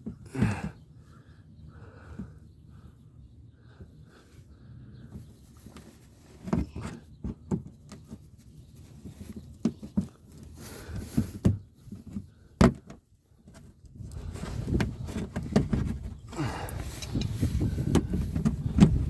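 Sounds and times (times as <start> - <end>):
plastic fender liner knocks and scrapes: 14.5 - 16.2.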